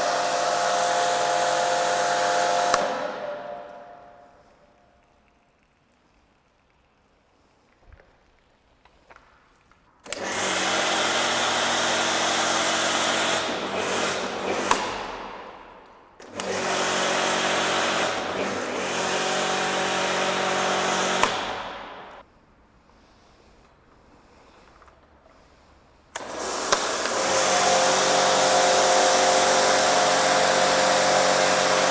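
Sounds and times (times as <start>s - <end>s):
pressure washer motor hum: 0.0s - 4.3s, 10.1s - 22.2s, 26.2s - 31.9s.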